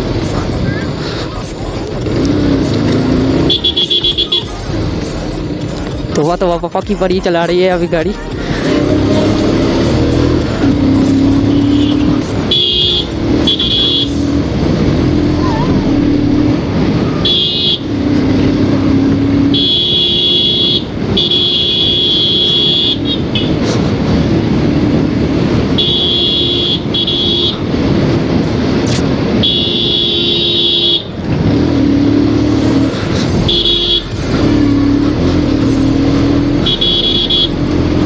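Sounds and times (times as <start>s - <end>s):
motorcycle engine running: 0.0s - 20.3s, 31.6s - 38.0s
traffic and road noise: 0.0s - 38.0s
vehicle horn honking: 2.0s - 6.8s, 8.0s - 14.8s, 15.5s - 18.0s, 18.9s - 23.6s, 25.7s - 27.9s, 29.4s - 31.2s, 33.3s - 38.0s.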